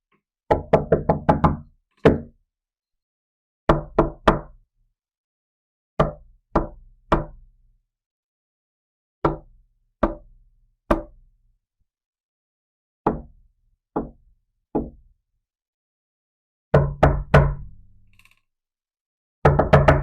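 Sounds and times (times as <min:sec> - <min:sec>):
knuckles knocking on a door: 0:00.5 - 0:02.3, 0:03.7 - 0:04.5, 0:13.1 - 0:13.3, 0:14.0 - 0:14.2, 0:14.8 - 0:15.0, 0:16.8 - 0:17.7, 0:19.4 - 0:20.0.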